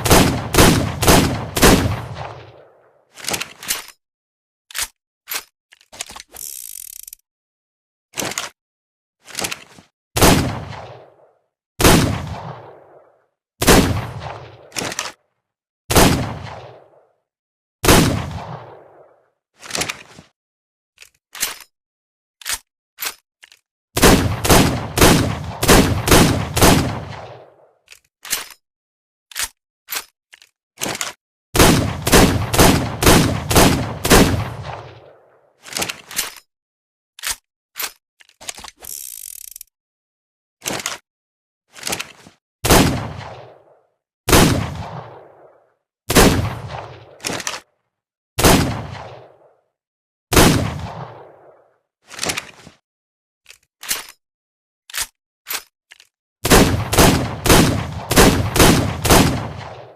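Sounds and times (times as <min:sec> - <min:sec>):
revolver gunshots with echo: 0:00.0 - 0:02.8, 0:10.2 - 0:14.8, 0:15.9 - 0:17.0, 0:17.8 - 0:19.2, 0:24.0 - 0:27.7, 0:31.6 - 0:35.3, 0:42.7 - 0:47.2, 0:48.4 - 0:49.5, 0:50.3 - 0:51.6, 0:56.4 - 0:59.9.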